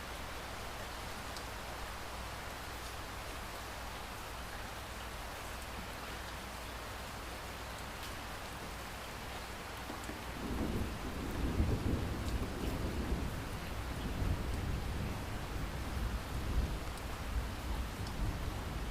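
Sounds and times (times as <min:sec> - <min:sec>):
steady rain falling: 0:00.0 - 0:18.9
raindrops ticking: 0:09.6 - 0:14.8, 0:18.0 - 0:18.3
low rumble of thunder: 0:10.1 - 0:18.9.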